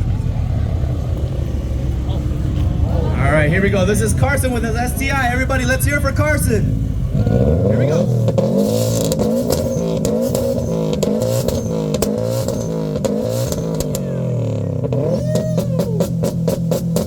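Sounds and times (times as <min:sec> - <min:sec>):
car engine on rev limiter: 0:00.0 - 0:17.0
exhaust pops and bangs: 0:03.7 - 0:17.0.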